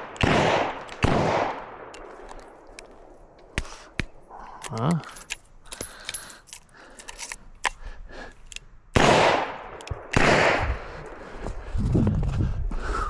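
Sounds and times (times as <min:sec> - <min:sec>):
gunshots with echo: 0:00.0 - 0:02.8, 0:09.0 - 0:11.3
revolver handling clicks: 0:00.0 - 0:10.6.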